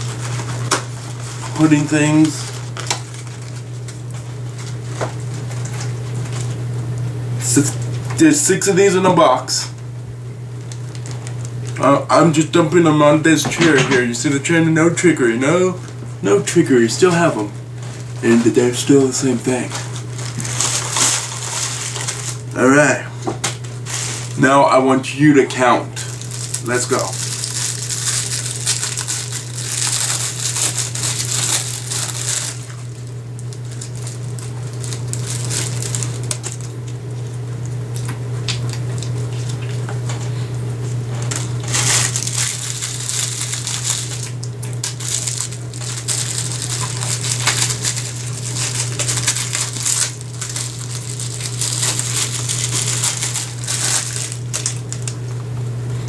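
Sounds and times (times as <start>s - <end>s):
plastic wrappers crinkling: 0.0s - 6.6s, 10.6s - 12.0s, 17.2s - 22.6s, 23.5s - 24.5s, 26.0s - 36.9s, 38.0s - 39.8s, 41.2s - 55.3s
steady low hum: 0.0s - 56.0s
person chewing: 41.4s - 55.2s.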